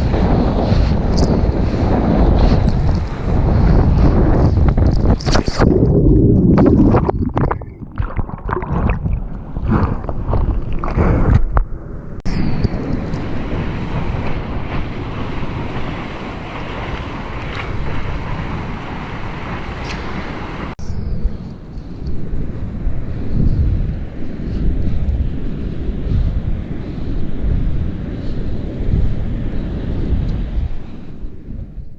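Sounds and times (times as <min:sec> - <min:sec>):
wind buffeting microphone: 0:00.0 - 0:31.9
splashing water: 0:04.9 - 0:11.6
ocean surf: 0:08.0 - 0:20.8, 0:21.5 - 0:31.6.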